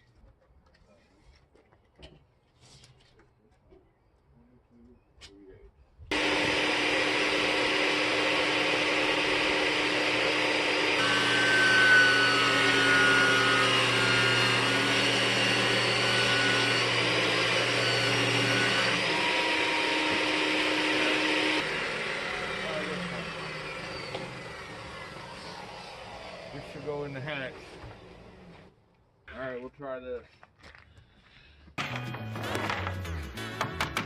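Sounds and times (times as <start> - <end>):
electric motor running: 6.1 - 27.1.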